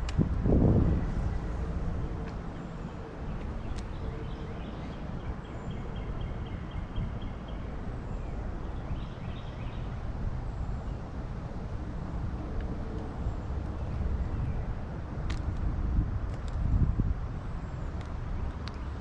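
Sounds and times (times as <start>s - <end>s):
bird chirping: 2.5s - 10.0s.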